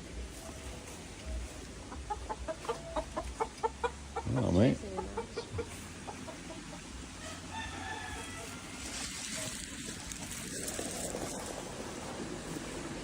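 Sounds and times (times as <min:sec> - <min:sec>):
steady rushing noise: 0:09.0 - 0:13.0.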